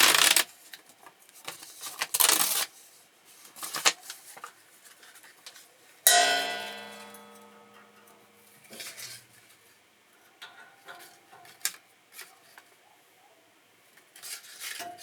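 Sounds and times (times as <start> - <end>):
small hard objects clicking and clattering: 0.0 - 0.4.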